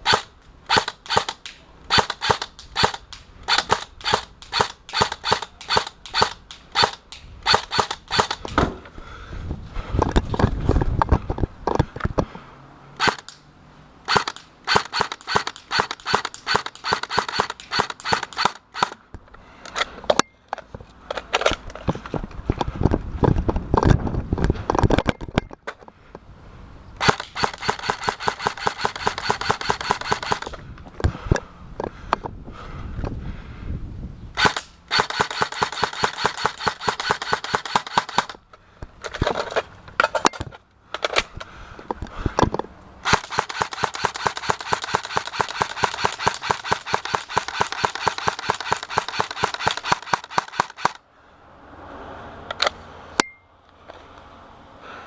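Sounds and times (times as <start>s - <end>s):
airsoft gun firing single shots: 0.0s - 8.6s, 13.0s - 13.3s, 14.1s - 19.0s, 27.0s - 30.6s, 34.4s - 38.4s, 43.0s - 51.0s.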